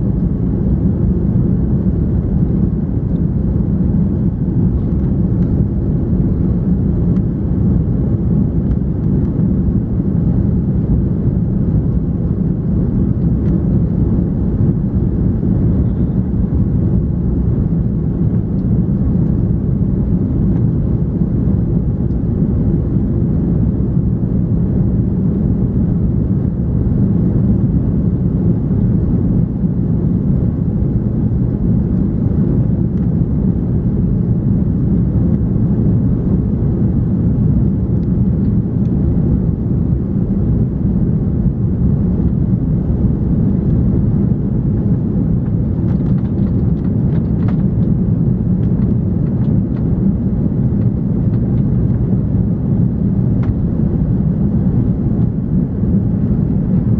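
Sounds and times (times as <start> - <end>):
airplane cabin engine rumble: 0.0 - 56.9.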